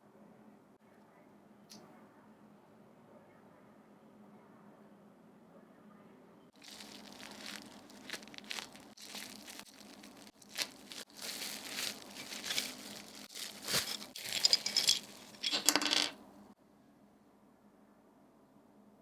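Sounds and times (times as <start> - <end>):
packaging crinkling and rustling: 6.6 - 16.1.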